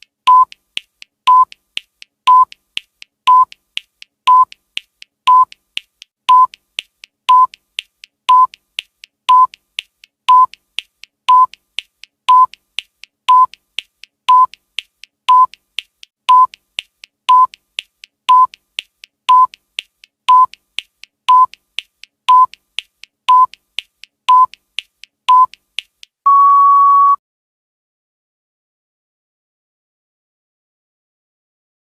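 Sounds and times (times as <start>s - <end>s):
short electronic beeps: 6.3s - 6.5s, 7.3s - 7.5s, 8.3s - 8.5s, 14.3s - 14.5s, 16.3s - 16.5s, 17.3s - 17.5s, 18.3s - 18.5s, 19.3s - 19.5s, 20.3s - 20.5s, 21.3s - 21.5s, 22.3s - 22.5s, 23.3s - 23.5s, 24.3s - 24.5s, 26.3s - 27.2s
long higher-pitched beep: 26.3s - 27.2s.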